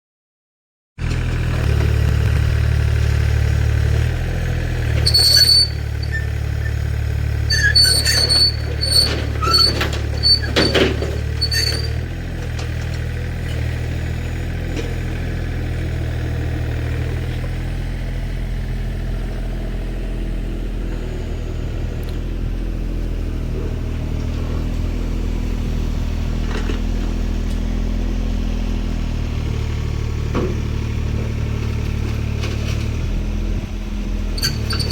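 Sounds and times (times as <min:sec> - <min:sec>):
excavator engine running: 0:01.0 - 0:34.9
metal squeaks and clatters: 0:05.0 - 0:06.8, 0:07.4 - 0:12.1, 0:34.4 - 0:34.9.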